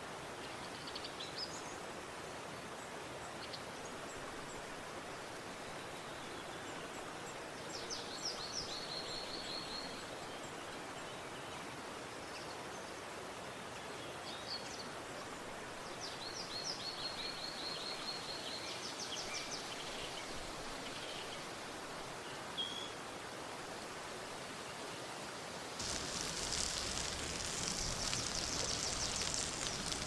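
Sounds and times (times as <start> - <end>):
stream rushing: 20.3 - 30.0.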